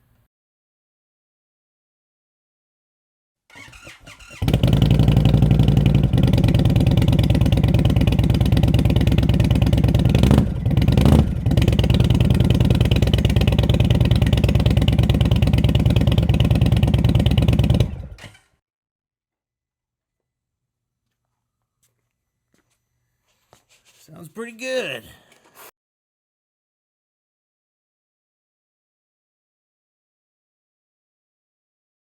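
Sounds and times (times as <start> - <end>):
motorcycle engine starting and idling: 3.5 - 18.5.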